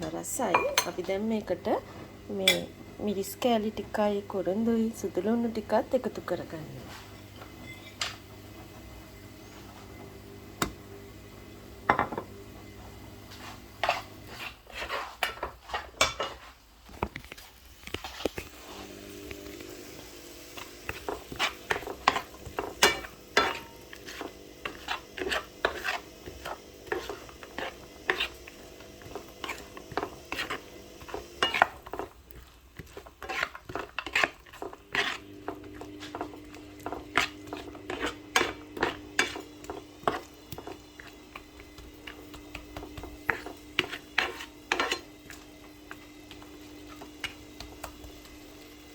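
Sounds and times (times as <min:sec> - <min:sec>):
metal spoon stirring in a pan: 0:13.4 - 0:16.6, 0:20.0 - 0:48.9.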